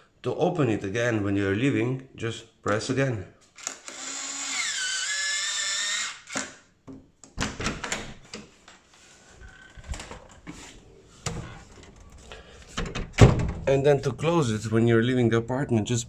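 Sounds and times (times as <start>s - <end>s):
door lock clicks and knocks: 7.3s - 8.4s, 12.8s - 13.7s.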